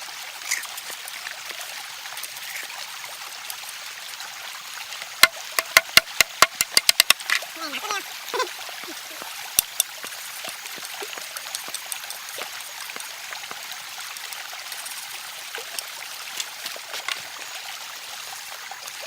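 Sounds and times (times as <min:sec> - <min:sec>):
stream babbling: 0:00.3 - 0:19.0
sharp knock: 0:05.2 - 0:07.2
small ticks: 0:05.2 - 0:07.4, 0:08.9 - 0:13.6, 0:14.2 - 0:17.4.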